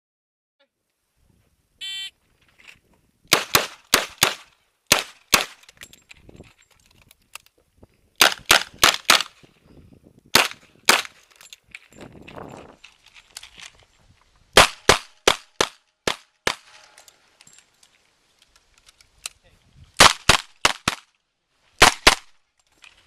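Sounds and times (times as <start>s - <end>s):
shot timer beep: 1.8s - 2.1s.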